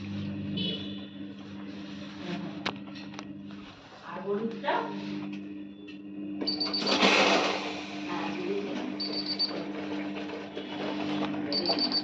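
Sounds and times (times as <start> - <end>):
steady low hum: 0.0 - 12.0
high alarm beeps: 5.7 - 6.9, 9.0 - 9.6, 11.5 - 12.0.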